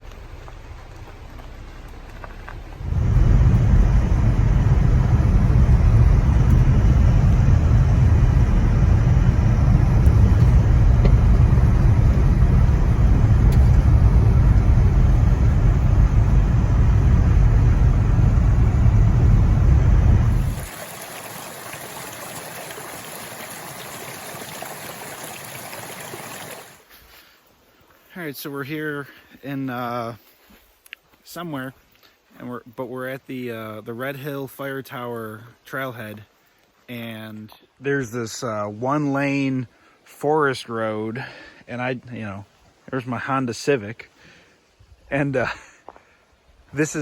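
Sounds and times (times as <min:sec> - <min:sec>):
car engine and road rumble: 0:00.0 - 0:20.7.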